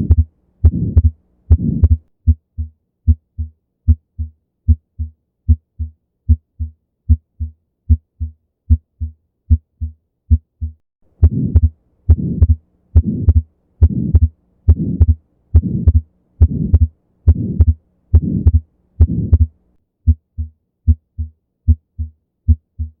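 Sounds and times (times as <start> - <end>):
rushing heart murmur: 0.0 - 3.2, 9.0 - 19.5
heartbeat through stethoscope: 0.0 - 19.5, 20.1 - 23.0.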